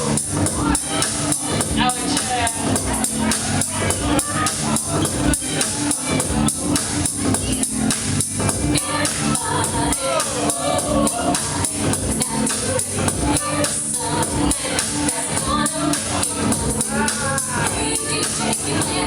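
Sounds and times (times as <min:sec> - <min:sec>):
person singing: 0:08.7 - 0:19.0.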